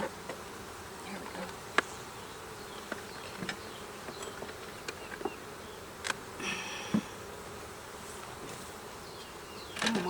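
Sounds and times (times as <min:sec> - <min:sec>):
honey bees buzzing: 0:00.0 - 0:10.0
wooden hive parts knocking: 0:02.8 - 0:05.4.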